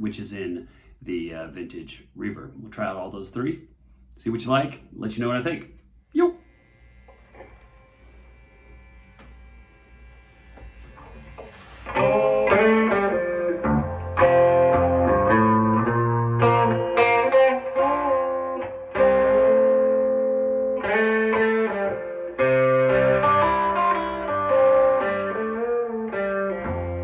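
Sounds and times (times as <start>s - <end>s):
low amp hum: 4.8s - 27.0s
electric guitar chords ringing: 6.5s - 27.0s.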